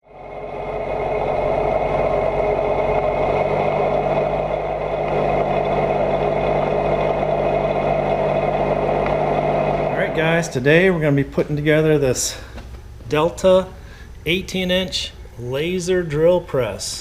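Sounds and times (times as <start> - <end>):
motor humming: 0.0 - 10.6.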